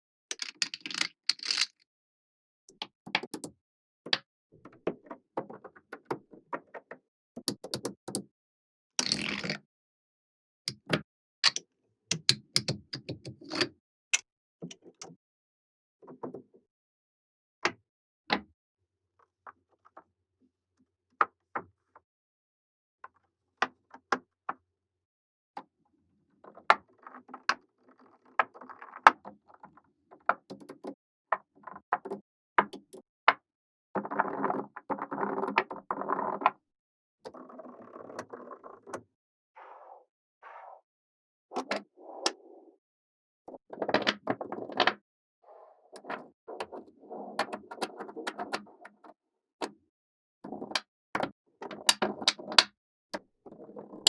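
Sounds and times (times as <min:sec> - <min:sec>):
magnetic balls clicking together: 0:02.8 - 0:03.5, 0:07.4 - 0:08.2.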